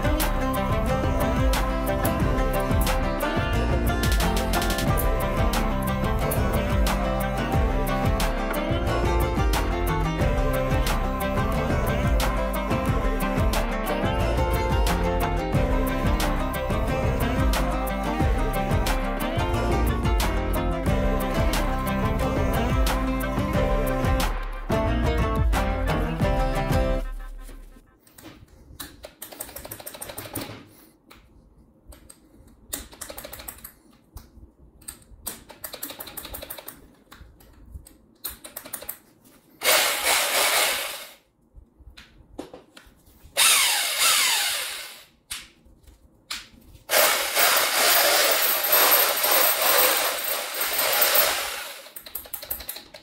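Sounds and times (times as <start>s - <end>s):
rotary hammer drill running: 39.6s - 41.2s, 43.4s - 45.1s, 46.9s - 52.0s.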